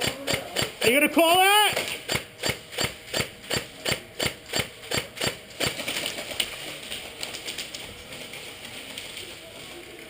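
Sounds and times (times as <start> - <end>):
crunching footsteps: 1.7 - 10.0.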